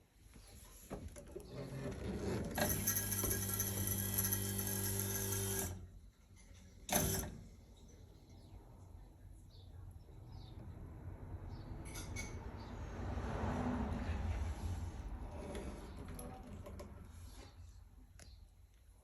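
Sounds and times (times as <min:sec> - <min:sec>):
small machine running: 0:02.6 - 0:05.8, 0:06.9 - 0:07.3.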